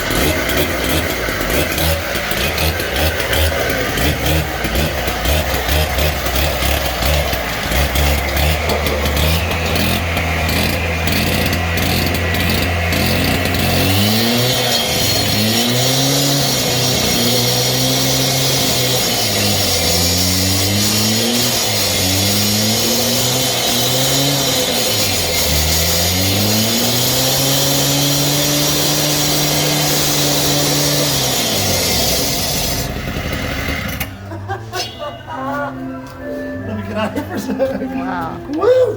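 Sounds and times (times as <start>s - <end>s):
cut-off saw engine revving: 0.0s - 34.5s.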